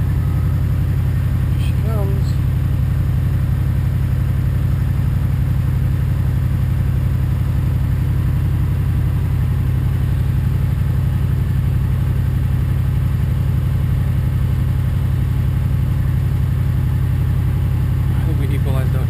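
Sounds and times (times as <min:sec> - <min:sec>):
motor droning: 0:00.0 - 0:05.2.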